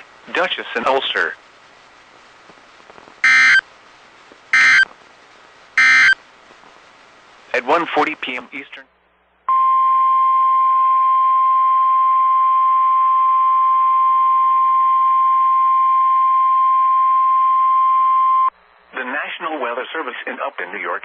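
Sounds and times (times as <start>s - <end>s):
faint radio hiss: 0.0s - 9.5s, 17.7s - 21.0s
steady warning alarm tone: 3.2s - 3.6s, 4.6s - 4.9s, 5.8s - 6.2s.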